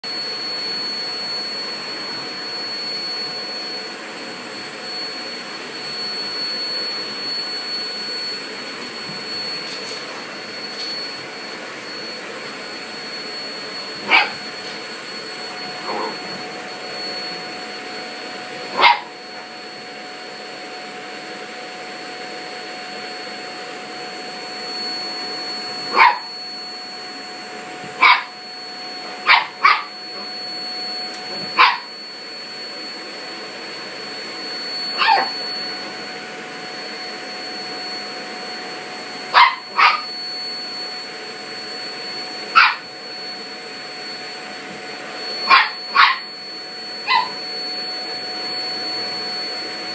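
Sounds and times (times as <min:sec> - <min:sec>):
vacuum cleaner whirring: 0:00.0 - 0:49.9
dog barking: 0:14.0 - 0:14.4, 0:15.8 - 0:16.3, 0:18.7 - 0:19.2, 0:25.9 - 0:26.3, 0:28.0 - 0:28.4, 0:29.1 - 0:30.3, 0:31.4 - 0:31.9, 0:35.0 - 0:35.4, 0:39.3 - 0:40.1, 0:42.5 - 0:42.9, 0:45.4 - 0:46.3, 0:47.0 - 0:47.4.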